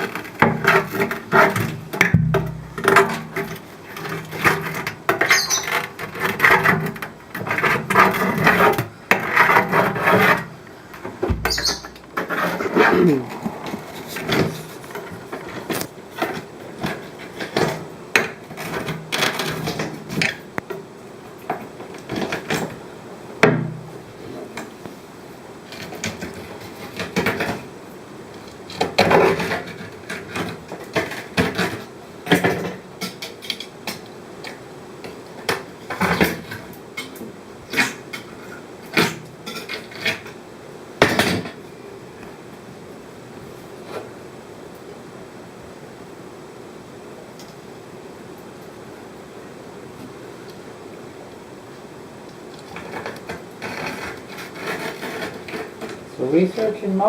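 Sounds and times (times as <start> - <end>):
rubbing or scraping: 0.0 - 17.7, 52.8 - 55.9
knocks: 1.9 - 3.5, 11.2 - 12.0
short squeaks: 5.2 - 6.0, 11.3 - 13.3.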